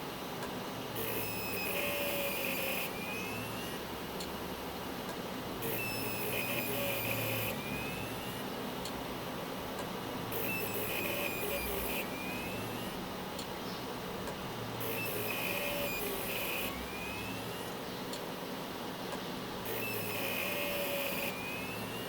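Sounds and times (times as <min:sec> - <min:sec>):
hard drive scratchy buzzing: 0:01.0 - 0:04.2, 0:05.6 - 0:08.6, 0:10.2 - 0:13.1, 0:14.8 - 0:18.0, 0:19.6 - 0:22.0.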